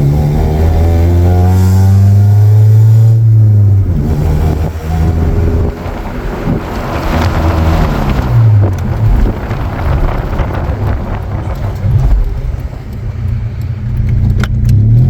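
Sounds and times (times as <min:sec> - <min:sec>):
car engine accelerating: 0:00.0 - 0:15.0
wind on microphone: 0:03.2 - 0:13.4.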